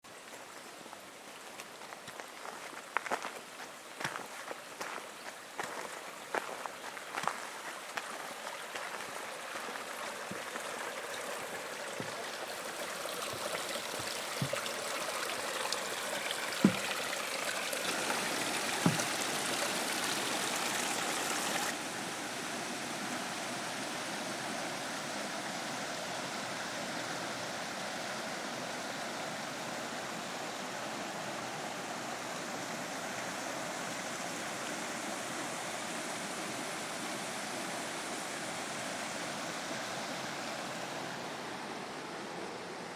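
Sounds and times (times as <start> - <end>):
water cascading down waterfall: 0.1 - 42.9
sharp knocks: 16.6 - 16.9.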